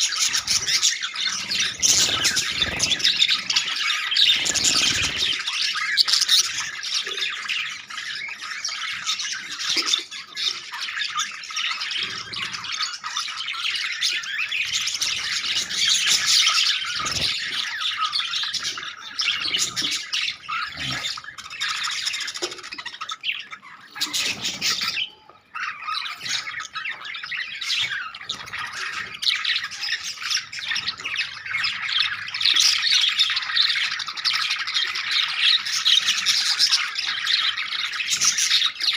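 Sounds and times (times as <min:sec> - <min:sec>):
budgerigars chattering and squawking: 0:00.0 - 0:38.9.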